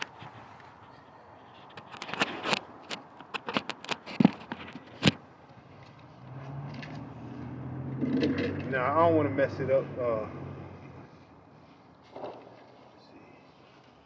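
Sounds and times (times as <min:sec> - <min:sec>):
clicks and scrapes of handling: 0:00.0 - 0:07.1
engine humming: 0:05.2 - 0:11.6.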